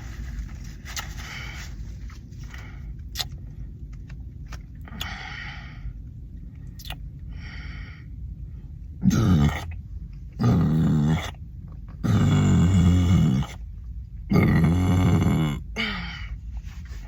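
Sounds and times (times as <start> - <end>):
heavy breathing: 7.3 - 8.8
loud low burp: 9.0 - 9.7, 10.4 - 11.4, 14.3 - 15.7.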